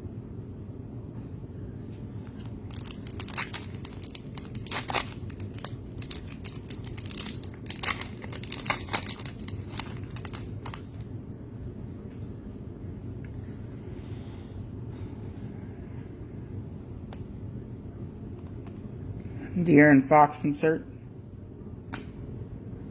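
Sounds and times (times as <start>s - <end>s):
wrappers crinkling and tearing: 2.2s - 11.1s.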